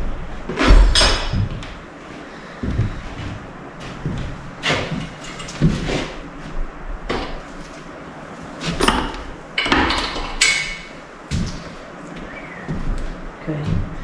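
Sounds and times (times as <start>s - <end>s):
metal parts clunking and scraping: 4.6s - 6.2s.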